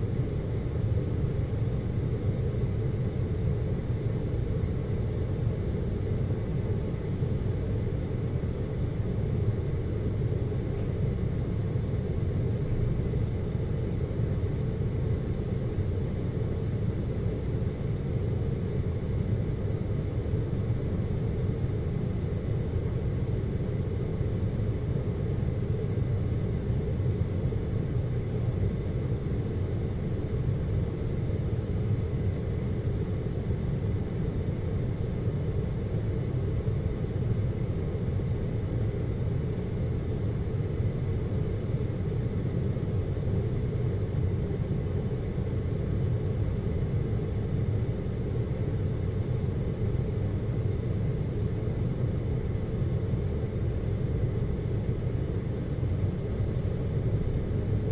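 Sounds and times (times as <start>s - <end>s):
faint high whine: 0.0s - 57.9s.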